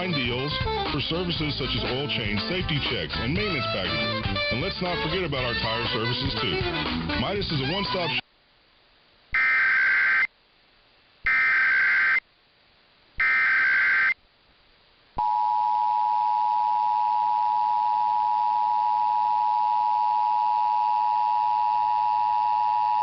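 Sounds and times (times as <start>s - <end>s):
warbling data tones: 9.4s - 10.3s, 11.3s - 12.2s, 13.2s - 14.2s.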